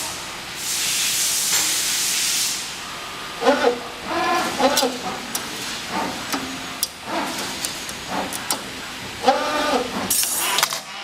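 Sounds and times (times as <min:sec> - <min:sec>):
servo motors whining: 0:09.2 - 0:10.7.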